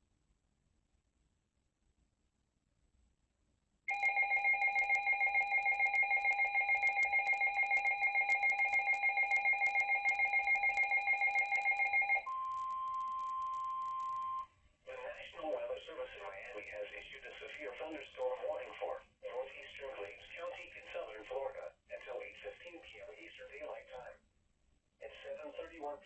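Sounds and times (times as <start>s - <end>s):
steady single-pitch alarm tone: 3.9s - 14.5s.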